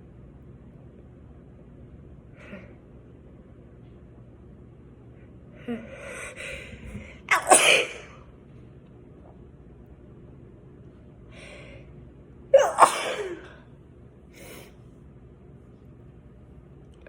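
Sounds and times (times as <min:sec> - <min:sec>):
person sneezing: 0:07.3 - 0:08.2, 0:12.6 - 0:13.6.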